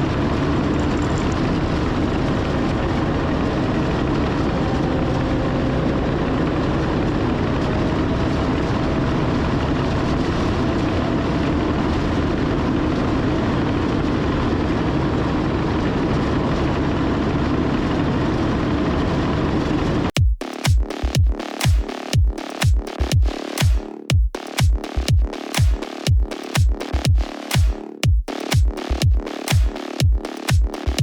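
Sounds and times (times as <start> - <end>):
faint engine whine: 0.0 - 20.0.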